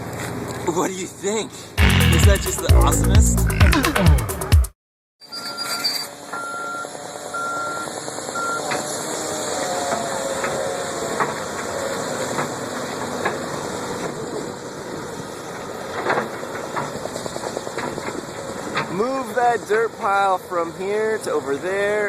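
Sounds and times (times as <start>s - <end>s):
diesel engine running: 1.8s - 4.4s
reversing alarm beeps: 5.3s - 8.7s.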